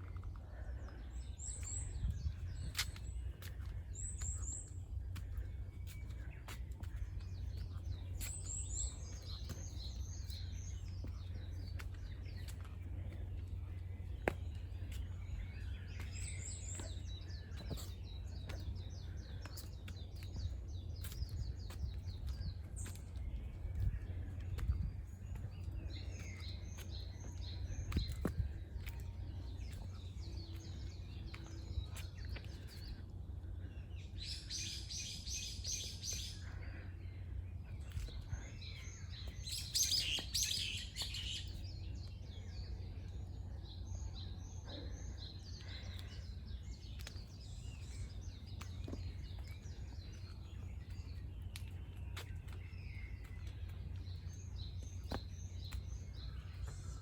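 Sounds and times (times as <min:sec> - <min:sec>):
small birds chirping: 0:00.0 - 0:57.0
steady low rumble: 0:00.0 - 0:57.0.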